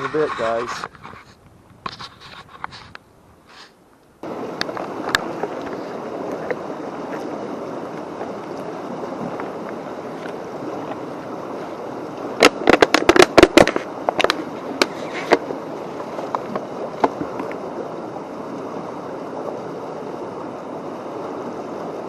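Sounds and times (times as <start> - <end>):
brook running: 0.0 - 22.0
sharp clicks and knocks: 12.4 - 15.4.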